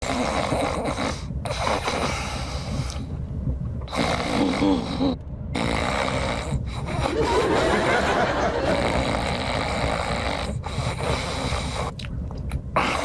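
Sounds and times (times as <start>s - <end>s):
person snoring: 0.0s - 3.0s, 3.9s - 7.3s, 8.6s - 12.0s
steady low rumble: 0.0s - 13.0s.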